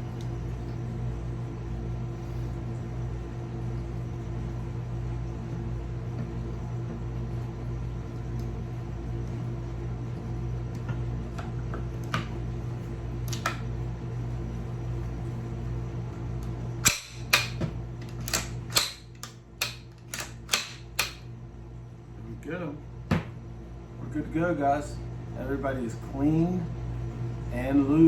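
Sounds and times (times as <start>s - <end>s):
steady low hum: 0.0s - 28.0s
pistol parts clicking: 16.8s - 21.2s.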